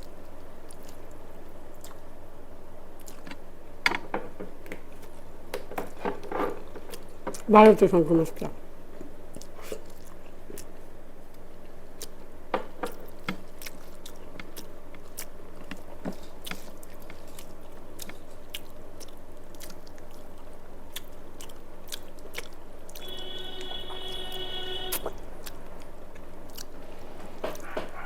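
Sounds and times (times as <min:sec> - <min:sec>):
person chewing food: 0:00.0 - 0:02.2, 0:02.9 - 0:07.5, 0:08.8 - 0:28.0
steady low hum: 0:00.0 - 0:28.0
pitched tone with overtones: 0:23.0 - 0:25.2.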